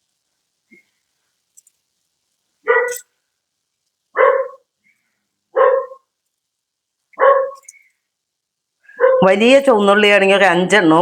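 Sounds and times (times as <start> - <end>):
dog barking: 2.6 - 3.1, 4.1 - 4.7, 5.5 - 6.1, 7.2 - 7.7, 8.9 - 9.3.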